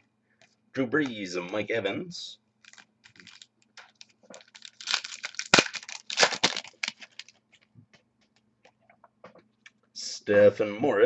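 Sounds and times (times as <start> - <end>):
wrapper crackling being torn: 2.6 - 7.4.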